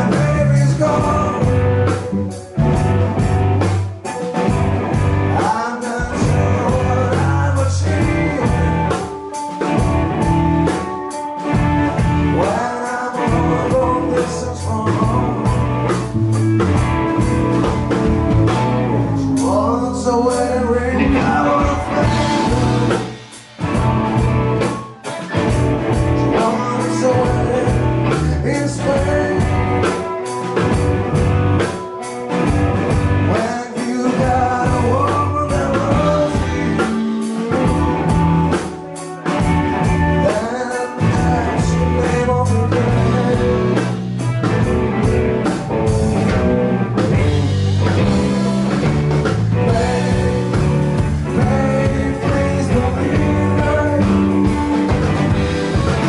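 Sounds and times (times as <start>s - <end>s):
man singing: 0.0s - 2.4s, 5.3s - 9.7s, 12.2s - 16.2s, 18.7s - 23.5s, 25.9s - 30.8s, 33.3s - 39.3s, 40.0s - 44.2s, 47.2s - 56.0s
bass guitar: 0.0s - 56.0s
drum kit: 0.0s - 56.0s
electric guitars: 0.0s - 56.0s.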